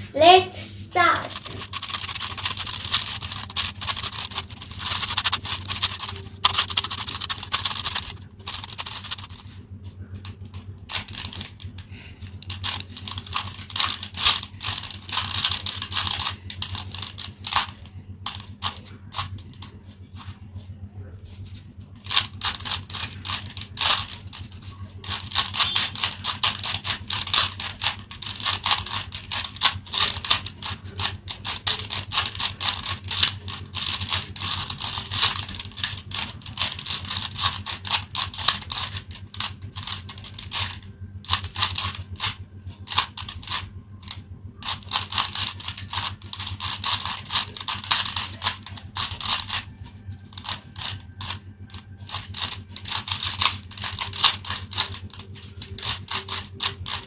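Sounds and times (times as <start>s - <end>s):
steady low hum: 0.0s - 57.0s
puzzle cube layers clicking: 1.1s - 9.5s, 10.2s - 19.8s, 22.0s - 49.6s.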